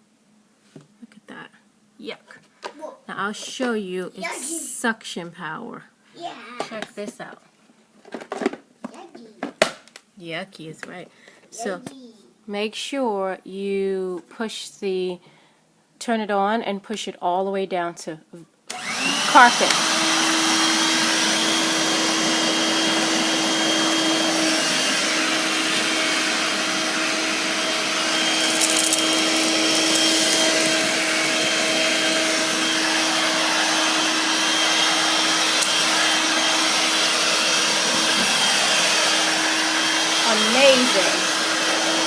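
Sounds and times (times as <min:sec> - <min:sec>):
vacuum cleaner running on carpet: 0:18.7 - 0:42.0.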